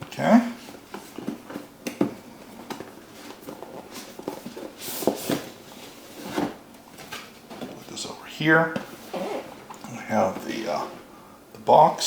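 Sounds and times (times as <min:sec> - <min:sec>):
cardboard rustling scrape: 0:03.0 - 0:06.6.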